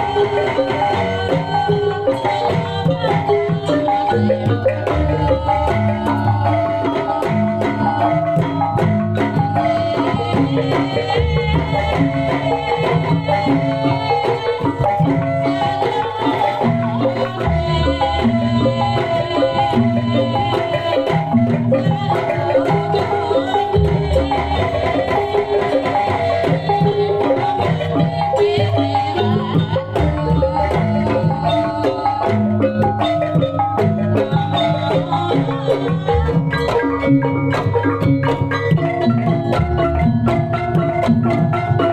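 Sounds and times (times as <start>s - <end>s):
drum pattern: 0.0s - 41.9s
metallophones ringing melody: 27.8s - 41.9s.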